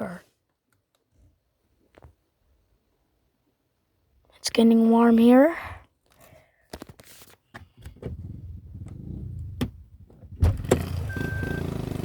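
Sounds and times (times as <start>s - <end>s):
low engine hum: 8.1s - 12.0s
car warning chime beeping: 10.9s - 11.8s.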